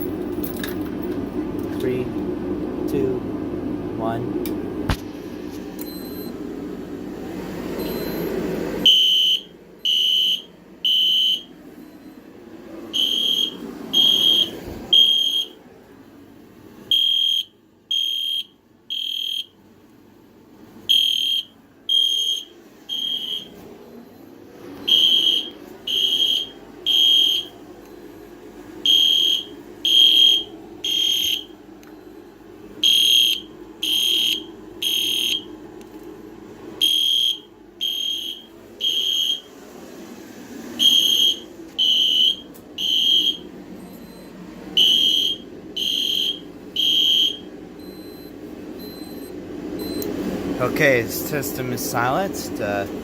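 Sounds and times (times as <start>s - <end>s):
steady low hum: 0.0s - 53.0s
fire alarm horns beeping: 7.8s - 12.2s, 12.9s - 15.6s, 16.9s - 19.6s, 20.8s - 35.6s, 36.8s - 39.5s, 40.8s - 50.1s.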